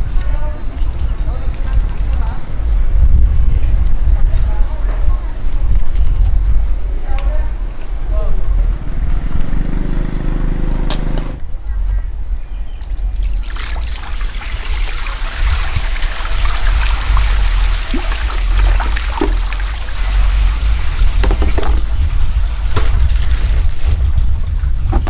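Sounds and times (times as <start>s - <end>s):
steady low rumble: 0.0s - 25.0s
water trickling and splashing: 12.8s - 24.4s.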